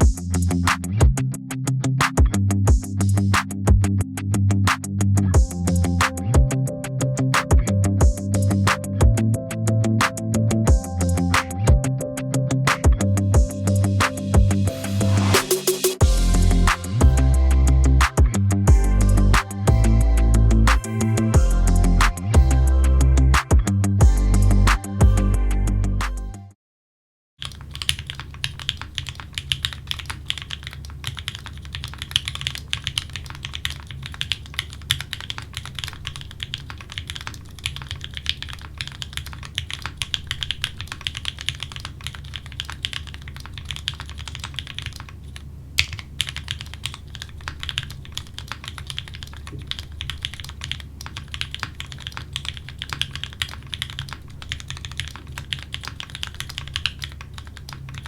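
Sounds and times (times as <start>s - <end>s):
steady low hum: 16.0s - 26.3s
fast mechanical keyboard typing: 27.4s - 58.0s.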